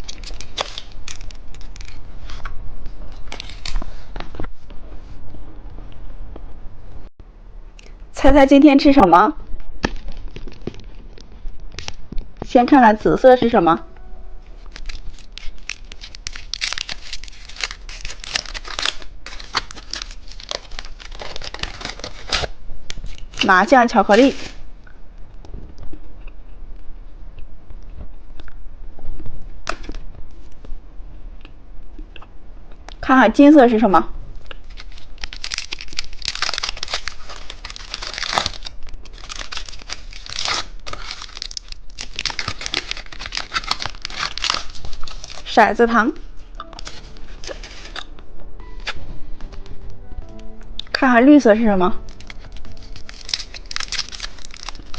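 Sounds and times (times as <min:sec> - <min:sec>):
candy wrapper crinkling: 0:00.0 - 0:04.2, 0:14.4 - 0:23.5, 0:34.4 - 0:45.8, 0:52.0 - 0:54.9.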